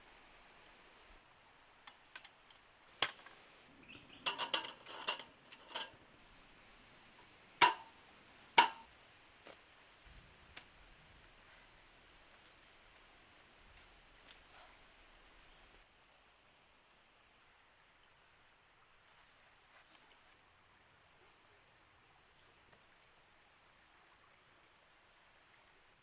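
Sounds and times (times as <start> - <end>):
hard objects knocking: 8.6 - 8.9.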